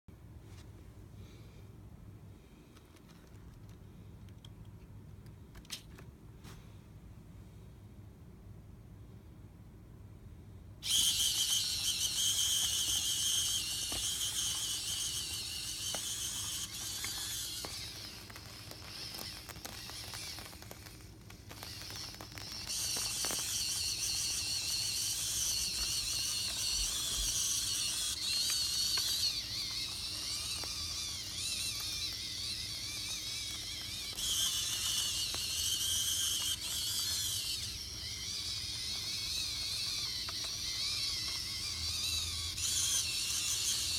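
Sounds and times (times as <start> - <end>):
small electric motors whining: 10.8 - 43.9.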